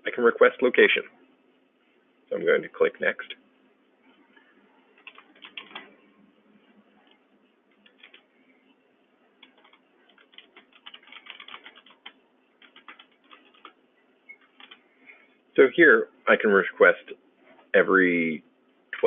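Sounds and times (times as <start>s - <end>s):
keyboard typing: 5.0s - 6.1s, 7.0s - 8.3s, 9.4s - 14.8s
mouse clicking: 9.4s - 14.8s.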